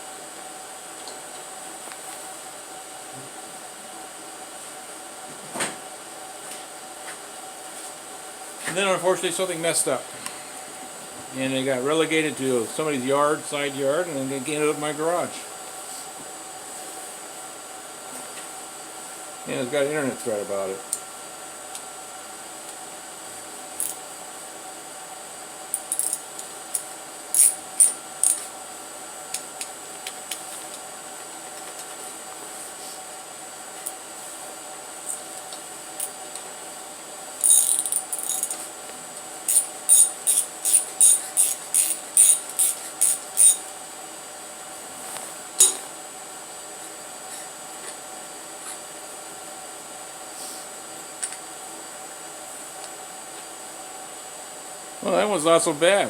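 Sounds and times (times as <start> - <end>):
steady hum: 0.0 - 56.0
socket ratchet clicking: 39.5 - 43.6.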